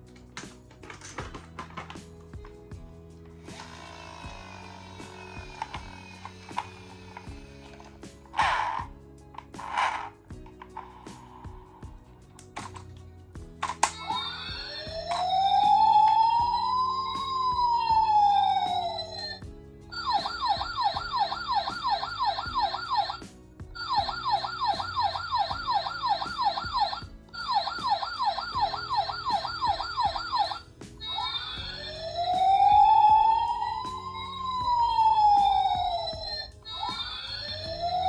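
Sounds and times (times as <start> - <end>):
light background music: 0.0 - 38.0
toy siren wailing and yelping: 13.8 - 19.4, 20.0 - 23.2, 23.8 - 38.0.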